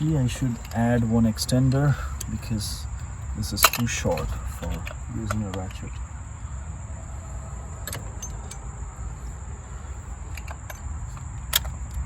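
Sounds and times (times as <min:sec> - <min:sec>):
metal tools clicking: 0:00.3 - 0:06.0, 0:07.8 - 0:08.7.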